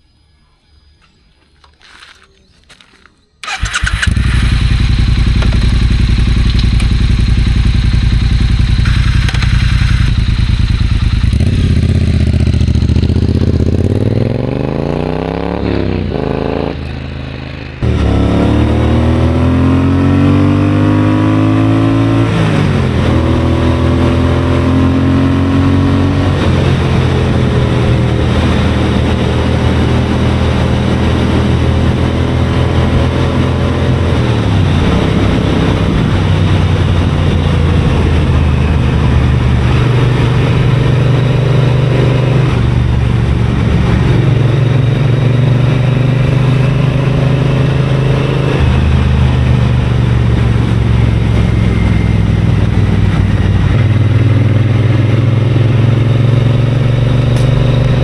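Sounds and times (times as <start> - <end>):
motorcycle engine running: 3.4 - 58.0
wind noise: 17.8 - 58.0.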